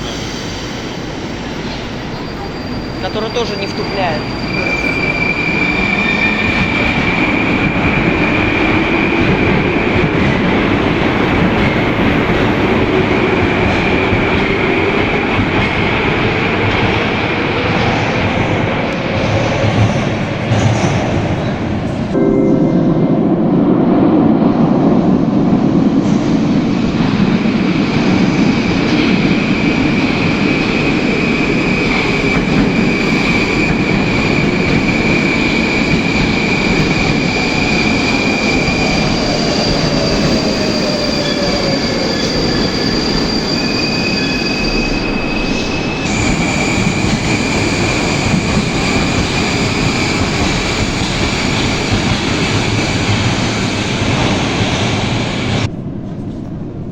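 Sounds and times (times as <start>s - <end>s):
high wheel squeal: 0.0s - 8.5s, 29.3s - 51.7s
metro train rumbling on rails: 0.0s - 56.9s.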